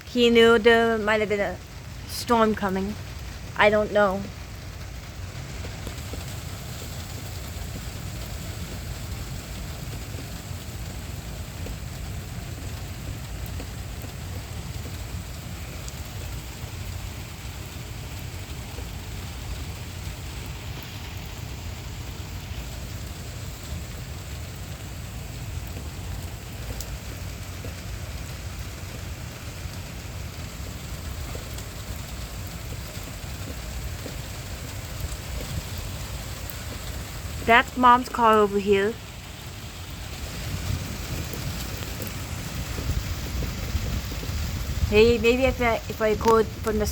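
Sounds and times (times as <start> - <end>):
heavy rain hissing: 0.0 - 46.9
low thunder rumble: 30.2 - 46.9.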